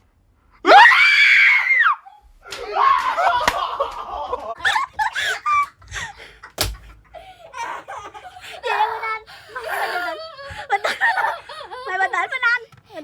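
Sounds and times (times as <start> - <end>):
people laughing and squealing: 2.5 - 12.6
sharp smack: 6.6 - 7.0.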